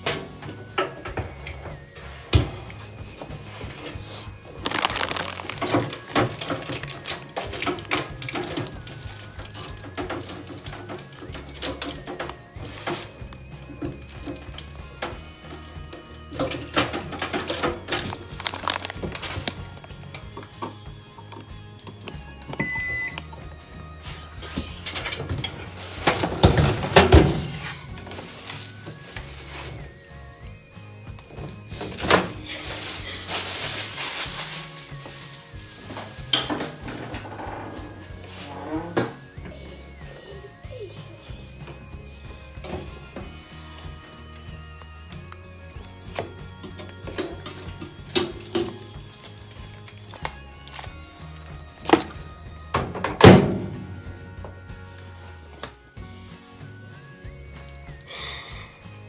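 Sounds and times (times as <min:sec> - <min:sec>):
household items clattering: 0:00.0 - 0:55.9
background music: 0:00.0 - 0:59.0
rustling: 0:01.6 - 0:20.2, 0:22.6 - 0:42.0
microwave keypad beep: 0:22.6 - 0:23.3.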